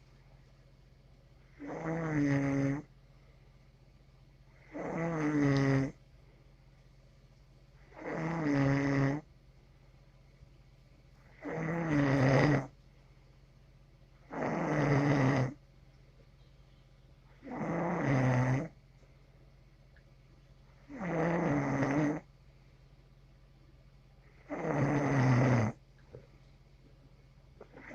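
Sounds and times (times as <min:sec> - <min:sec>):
person snoring: 0:01.6 - 0:02.9, 0:04.6 - 0:06.0, 0:07.9 - 0:09.2, 0:11.3 - 0:12.7, 0:14.3 - 0:15.6, 0:17.4 - 0:18.7, 0:20.9 - 0:22.2, 0:24.3 - 0:25.8.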